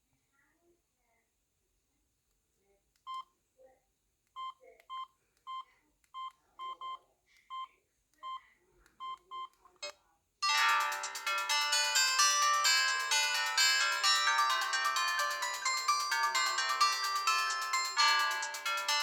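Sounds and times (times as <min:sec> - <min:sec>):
phone key beeps: 0:04.4 - 0:08.4
ringtone melody: 0:10.4 - 0:19.0.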